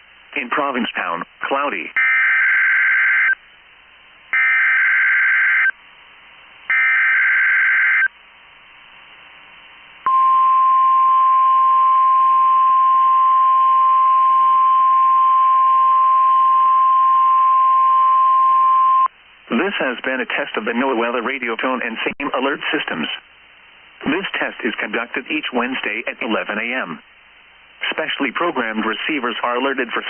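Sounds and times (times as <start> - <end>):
steady warning alarm tone: 4.4 - 5.7, 6.7 - 8.1.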